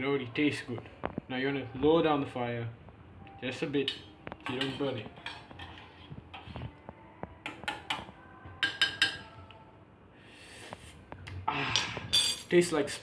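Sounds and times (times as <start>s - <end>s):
metal fork clinking on bowl: 11.8s - 12.6s.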